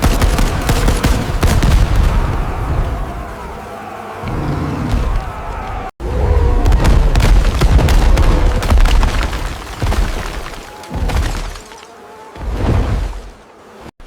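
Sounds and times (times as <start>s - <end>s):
deep booms and crashes: 6.0s - 11.5s.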